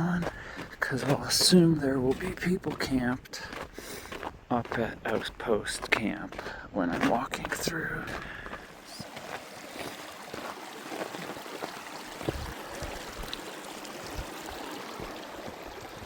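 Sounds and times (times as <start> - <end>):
footsteps on trail: 0.0 - 16.0
creek water rushing: 6.3 - 16.0.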